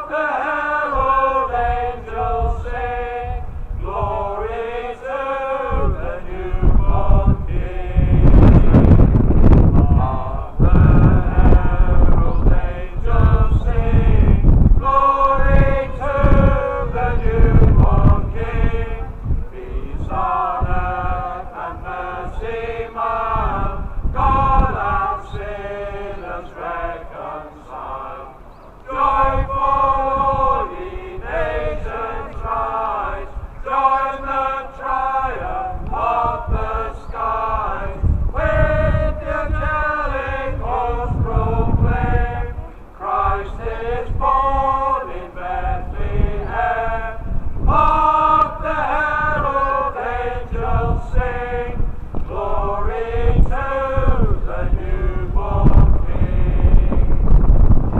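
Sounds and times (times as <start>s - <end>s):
man chanting in long notes: 0.0s - 9.1s, 9.7s - 51.8s
wind buffeting microphone: 0.0s - 57.9s.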